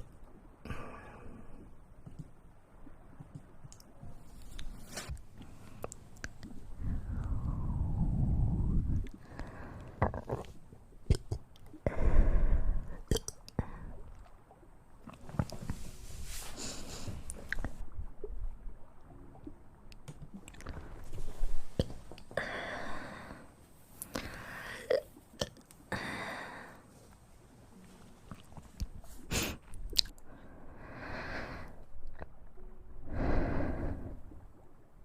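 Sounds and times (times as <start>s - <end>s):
mouth clicks: 5.8s - 7.8s, 8.9s - 12.0s, 12.8s - 13.8s, 24.0s - 26.0s, 28.3s - 30.3s.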